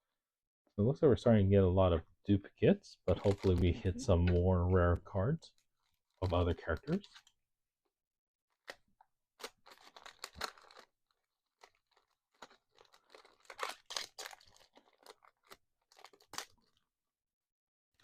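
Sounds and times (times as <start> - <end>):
wrapper crinkling and tearing: 3.1 - 3.9, 5.6 - 7.3, 8.5 - 16.9.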